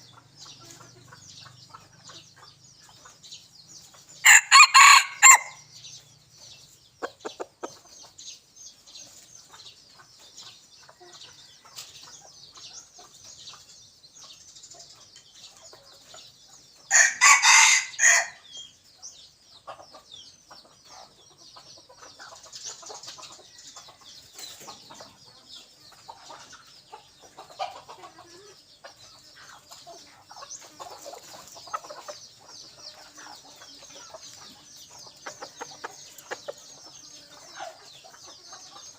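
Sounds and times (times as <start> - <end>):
faint high-pitched chirping: 0.0 - 17.3, 17.9 - 38.9
cockerel crowing: 4.2 - 5.6, 16.9 - 18.4.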